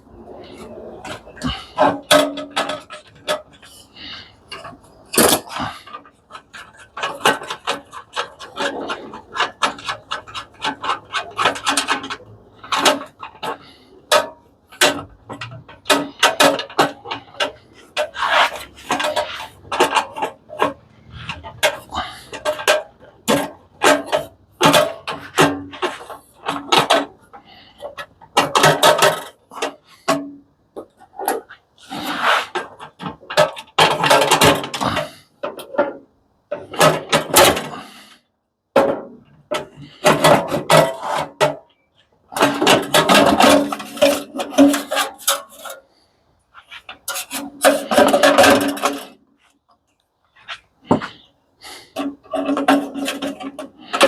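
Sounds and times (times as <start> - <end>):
metal parts clattering and scraping: 0.0 - 38.2, 38.8 - 54.0.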